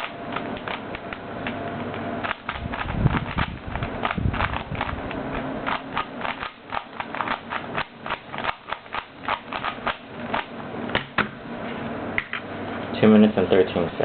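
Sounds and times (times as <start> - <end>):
puzzle cube twisting clicks: 0.0 - 10.5.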